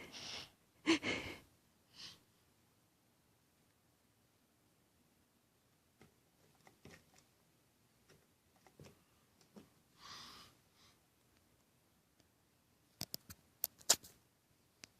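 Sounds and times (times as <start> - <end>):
soft breath: 0.0 - 2.4, 9.9 - 11.1.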